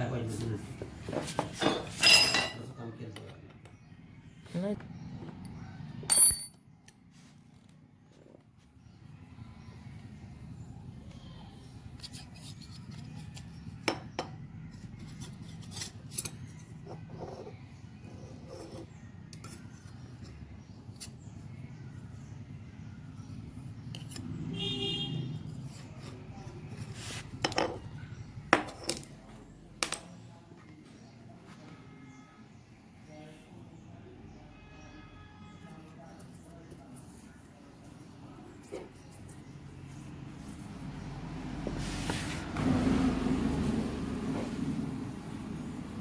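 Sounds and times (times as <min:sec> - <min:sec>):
metal tools clinking: 0:01.6 - 0:02.7, 0:06.1 - 0:06.6.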